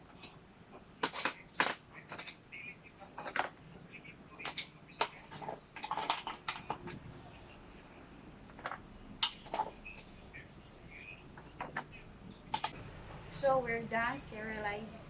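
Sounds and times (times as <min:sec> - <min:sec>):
plastic bottle parts clattering: 0:04.4 - 0:07.0.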